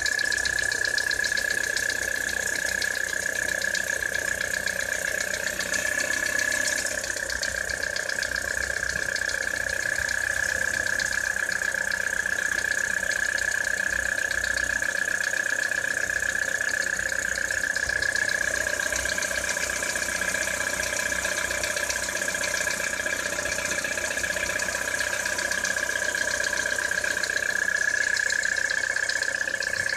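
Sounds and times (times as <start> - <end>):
car engine idling: 0.0 - 29.9
high steady whine: 0.0 - 29.9
rapid engine knocking: 0.0 - 29.9.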